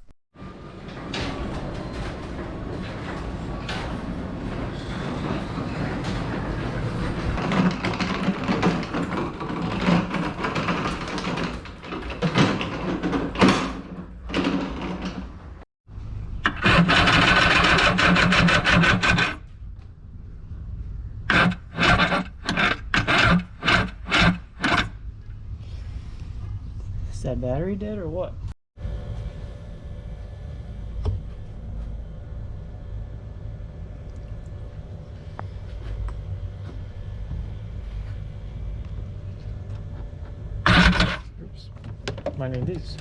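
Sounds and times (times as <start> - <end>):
electric starter cranking engine: 16.4 - 19.4, 21.3 - 24.9, 40.6 - 41.3.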